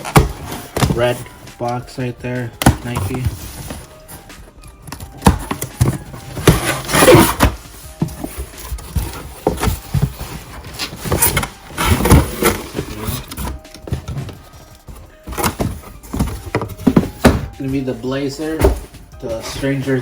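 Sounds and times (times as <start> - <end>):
cardboard boxes knocking: 0.0 - 20.0
cardboard rustling and scraping: 0.0 - 20.0.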